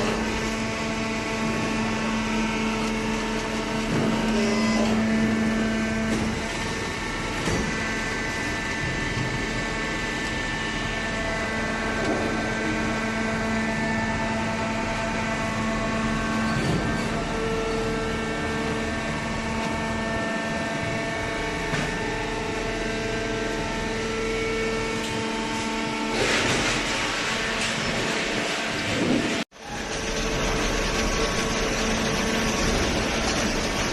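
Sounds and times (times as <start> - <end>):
baler motor humming: 29.6 - 33.9.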